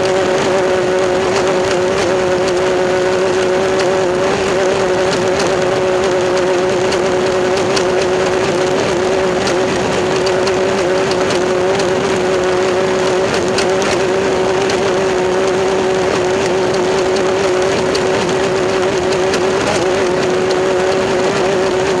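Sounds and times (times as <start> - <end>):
engine droning: 0.0 - 22.0
faint clicks: 0.0 - 22.0.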